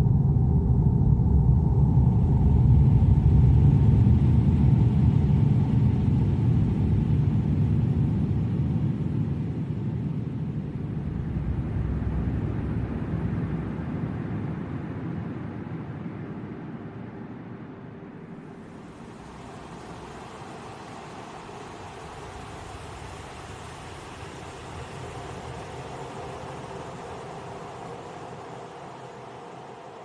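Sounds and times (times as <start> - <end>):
deep rumbling wind: 0.0 - 17.4.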